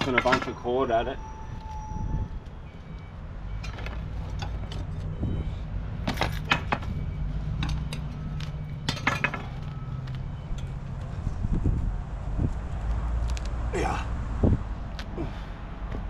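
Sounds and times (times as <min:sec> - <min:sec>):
debris clinking and rattling: 0:08.8 - 0:09.6.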